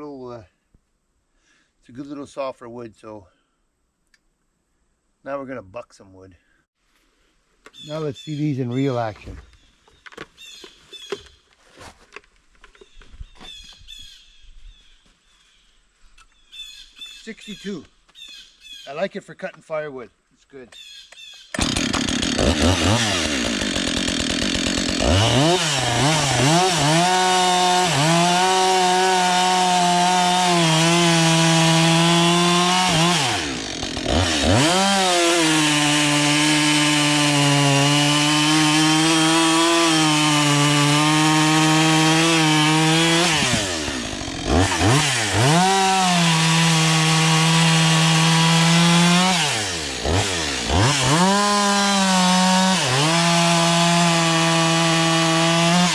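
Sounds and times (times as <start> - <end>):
chainsaw cutting wood: 21.1 - 55.9.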